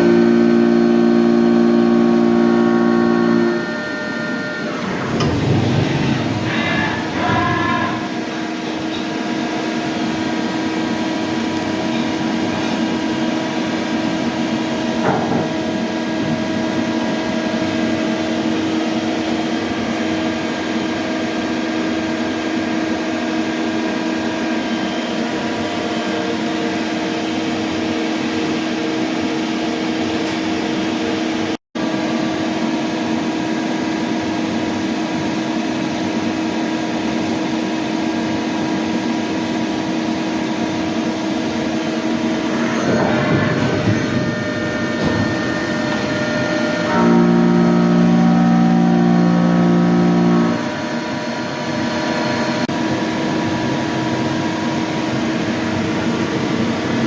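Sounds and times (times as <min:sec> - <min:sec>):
lathe mechanical hum: 0:00.0 - 0:31.6, 0:52.7 - 0:57.0.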